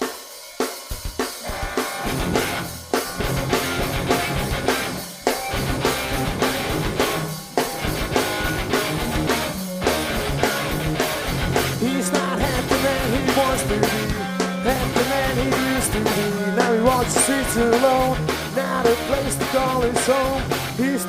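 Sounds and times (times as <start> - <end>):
live rock band playing: 0.0 - 21.0.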